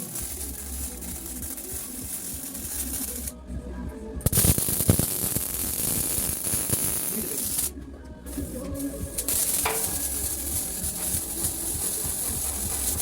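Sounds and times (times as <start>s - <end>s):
laser cutter gas hiss: 0.0s - 3.4s, 4.2s - 13.0s
sharp cracks: 4.2s - 7.7s.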